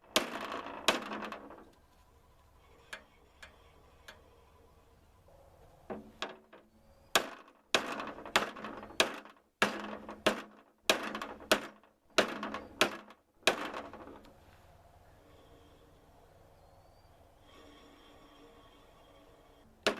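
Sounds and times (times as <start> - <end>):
hammer pounding steel: 7.2 - 13.8.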